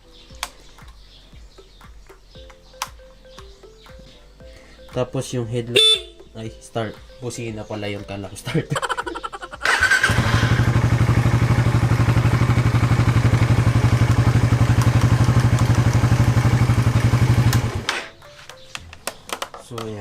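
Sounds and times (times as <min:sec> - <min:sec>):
motorcycle engine starting and idling: 0:09.6 - 0:18.1.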